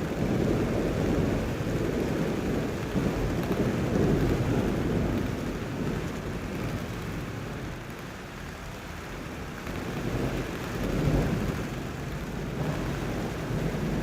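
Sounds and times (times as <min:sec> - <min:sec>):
thunder rumbling: 0:00.0 - 0:07.6.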